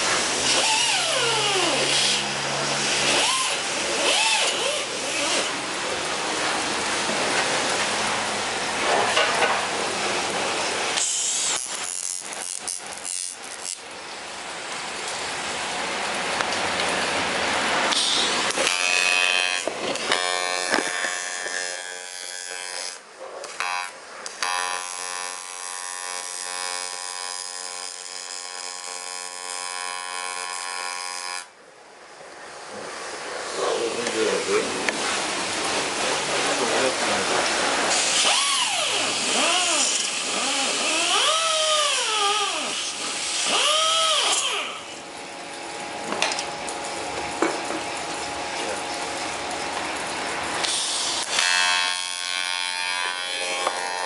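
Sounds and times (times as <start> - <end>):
electric tool motor whining: 0.3 - 5.6, 18.5 - 31.5, 37.9 - 44.9, 50.6 - 54.0
steady hissing: 10.4 - 13.8.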